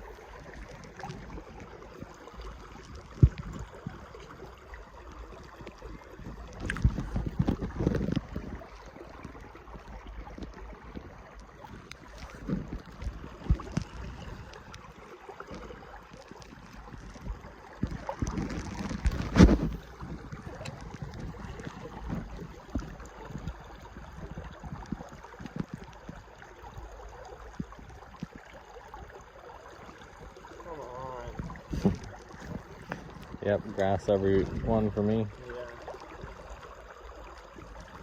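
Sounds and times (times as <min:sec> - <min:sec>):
wind rumbling on microphone: 0:00.0 - 0:29.2, 0:31.1 - 0:38.0
stream water flowing: 0:00.0 - 0:38.0
irregular knocks and thumps: 0:03.1 - 0:03.9, 0:06.6 - 0:09.4, 0:11.7 - 0:14.7, 0:16.9 - 0:23.0, 0:31.3 - 0:33.4.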